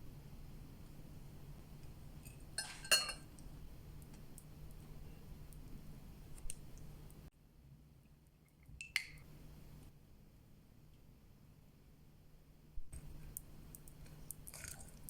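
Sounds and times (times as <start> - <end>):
tableware clinking: 2.3 - 3.3.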